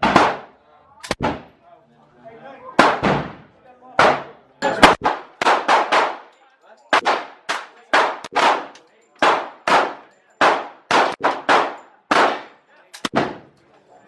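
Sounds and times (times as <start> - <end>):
gunshots with echo: 0.0 - 0.5, 2.8 - 6.3, 7.0 - 13.5.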